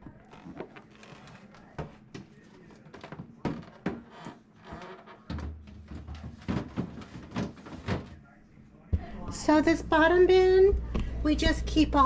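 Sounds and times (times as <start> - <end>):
plastic bin knocks and clunks: 5.2 - 8.2.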